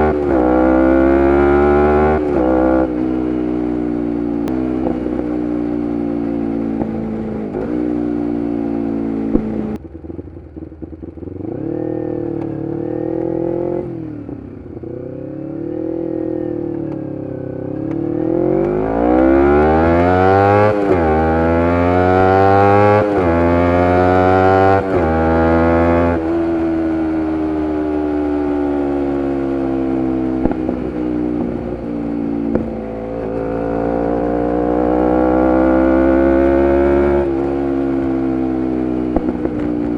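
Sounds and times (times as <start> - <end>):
motorcycle engine revving: 0.0 - 39.9.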